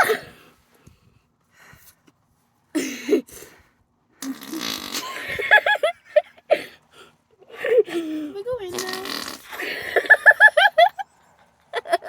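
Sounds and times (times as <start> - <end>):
fart noises: 4.2 - 5.2, 8.7 - 9.7.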